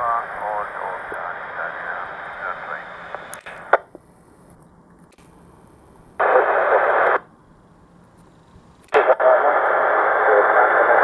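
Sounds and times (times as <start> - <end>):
radio hiss: 0.0 - 4.5, 5.2 - 7.3, 8.3 - 11.0
radio squelch click: 0.4 - 5.4, 8.2 - 11.0.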